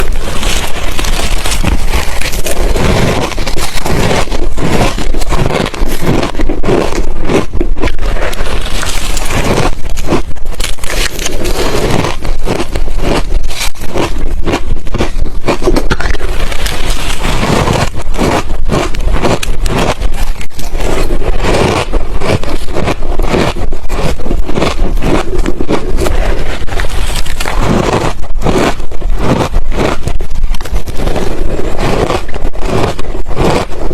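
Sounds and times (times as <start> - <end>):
ice crunching being chewed: 0.0 - 33.9.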